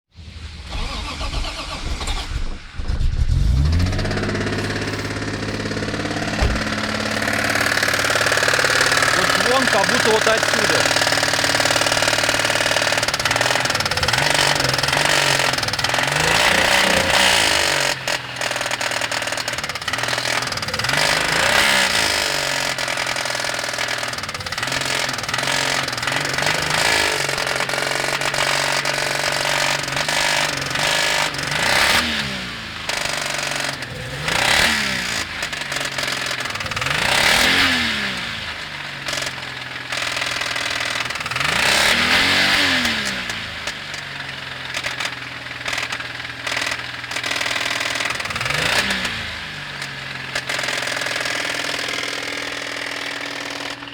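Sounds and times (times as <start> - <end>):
car engine idling and revving: 0.0 - 53.9.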